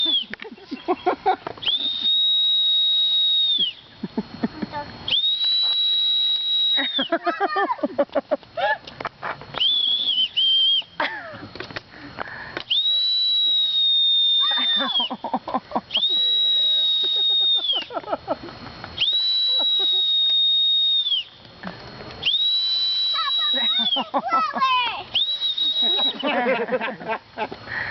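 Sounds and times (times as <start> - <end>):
shrill toy whistle blasts: 1.6 - 3.9, 5.1 - 7.1, 9.6 - 10.9, 12.6 - 15.1, 15.9 - 17.9, 19.0 - 21.4, 22.2 - 24.2, 24.9 - 26.3.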